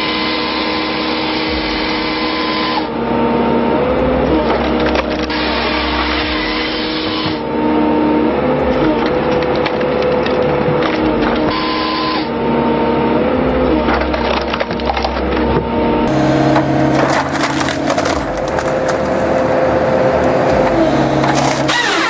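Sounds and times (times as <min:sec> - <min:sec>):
heavy machine engine running: 0:00.0 - 0:22.0
wood cracking and splintering: 0:04.2 - 0:07.4, 0:08.7 - 0:11.7, 0:13.6 - 0:22.0.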